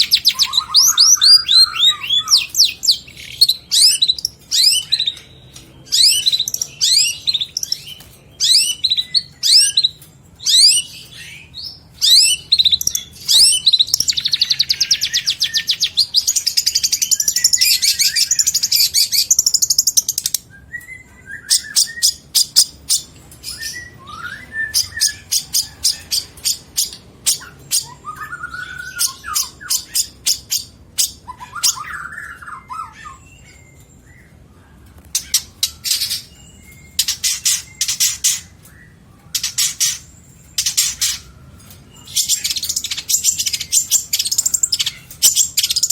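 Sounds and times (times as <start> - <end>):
shrike singing varied song: 0.0 - 34.3.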